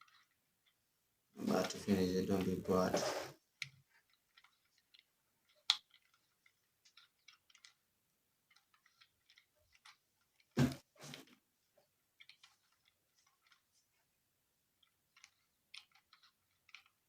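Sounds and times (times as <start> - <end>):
puzzle cube plastic clicks: 3.6 - 7.8, 14.8 - 17.0.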